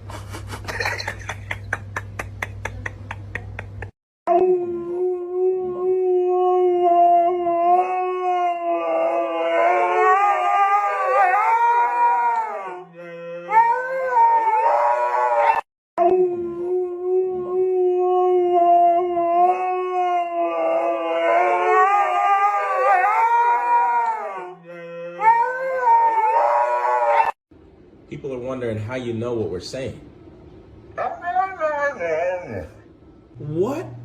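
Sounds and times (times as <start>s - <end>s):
dog howling: 4.3s - 27.4s, 31.0s - 32.9s.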